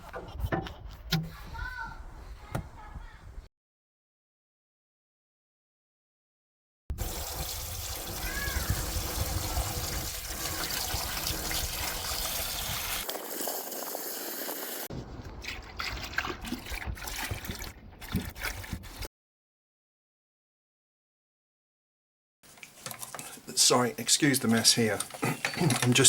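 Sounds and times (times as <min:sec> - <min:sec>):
liquid trickling: 0:06.9 - 0:19.0
ticks and splashes: 0:15.3 - 0:19.0.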